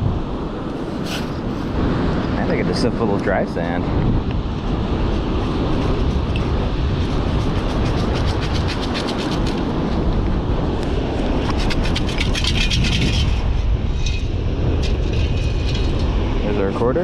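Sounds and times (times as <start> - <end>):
wind buffeting microphone: 0.0 - 17.0
sand rattling through scoop: 0.8 - 1.7.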